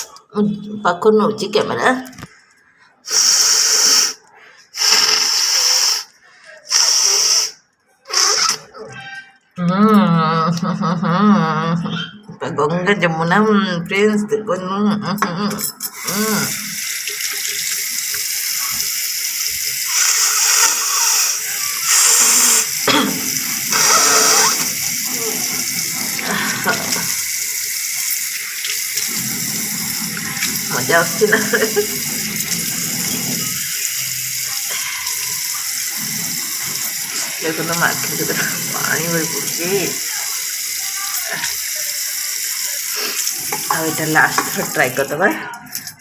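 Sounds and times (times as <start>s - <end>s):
person blowing nose: 3.1s - 4.2s, 4.8s - 6.1s, 6.7s - 8.7s, 19.9s - 22.8s, 23.7s - 24.7s
water splashing and pouring: 16.0s - 46.0s.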